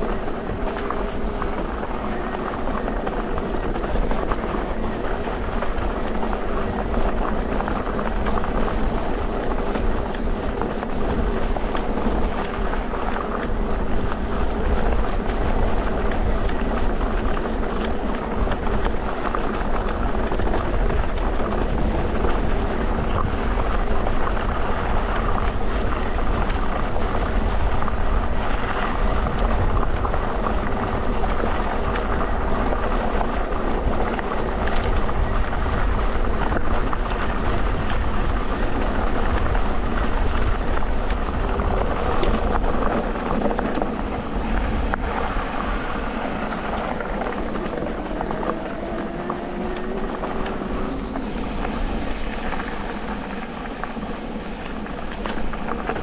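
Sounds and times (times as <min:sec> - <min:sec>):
tyres rumbling over dirt: 0:00.0 - 0:56.0
electric motor whine: 0:41.4 - 0:56.0.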